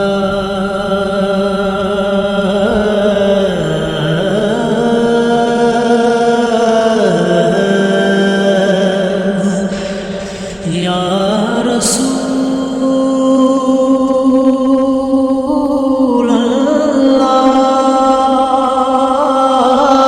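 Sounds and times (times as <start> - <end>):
man singing long notes: 0.0 - 20.0.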